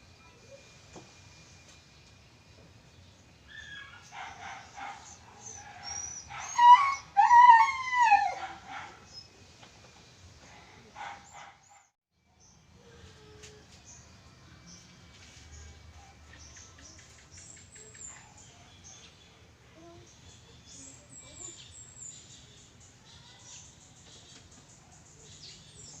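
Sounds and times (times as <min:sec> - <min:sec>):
dog whining and howling: 0:03.5 - 0:09.0
dog yelps: 0:03.5 - 0:09.0.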